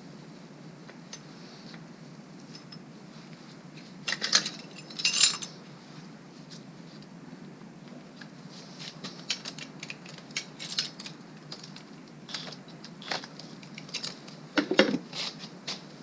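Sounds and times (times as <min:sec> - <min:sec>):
steady low hum: 0:00.0 - 0:16.0
metal hand tools clinking: 0:04.1 - 0:05.6, 0:09.2 - 0:14.2.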